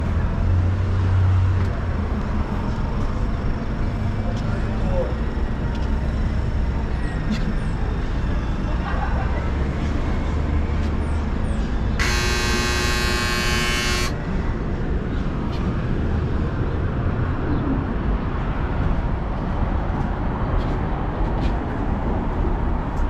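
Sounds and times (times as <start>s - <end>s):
shrill buzzing tone: 12.0s - 14.2s.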